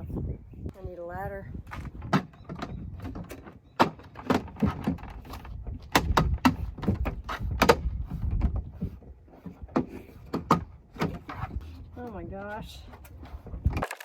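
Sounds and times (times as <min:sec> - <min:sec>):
wind rumble on microphone: 0:00.0 - 0:03.5, 0:04.3 - 0:13.8.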